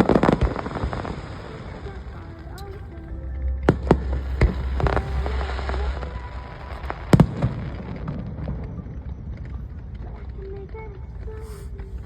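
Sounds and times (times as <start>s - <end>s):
fireworks crackling: 0.0s - 3.0s, 3.7s - 12.0s
fireworks bangs: 3.7s - 10.4s.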